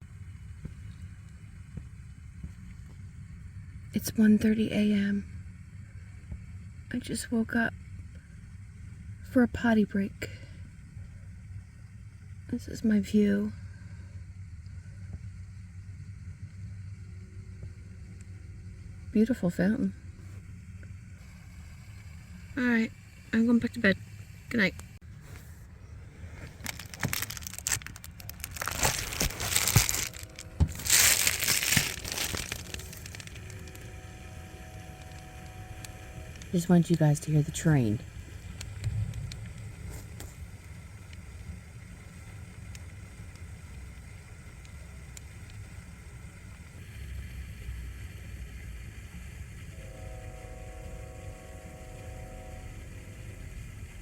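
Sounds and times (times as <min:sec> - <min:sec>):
close rustling and crinkling: 0:25.1 - 0:33.9
train horn chord: 0:49.7 - 0:53.9.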